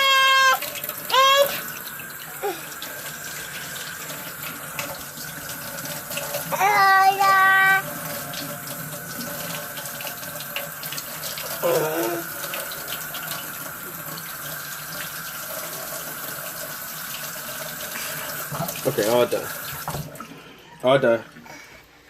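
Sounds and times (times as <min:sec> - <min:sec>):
small child's voice: 0:00.0 - 0:01.7, 0:02.4 - 0:02.8, 0:06.5 - 0:07.9, 0:11.6 - 0:12.3
tap water running into sink: 0:00.0 - 0:20.4.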